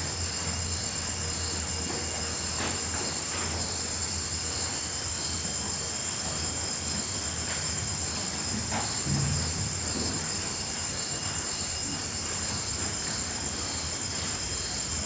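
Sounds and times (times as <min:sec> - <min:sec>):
crickets trilling: 0:00.0 - 0:15.0
pulsing insect: 0:00.0 - 0:15.0.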